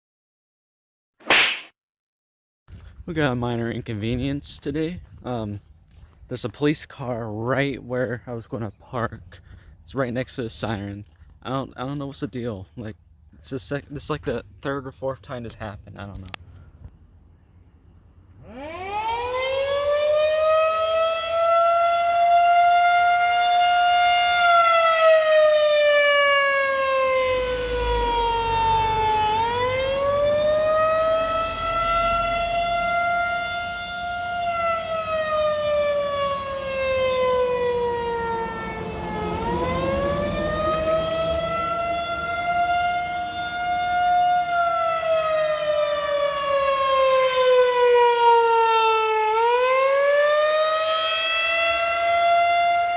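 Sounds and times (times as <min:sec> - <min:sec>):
warning siren wailing: 0:18.3 - 0:52.9.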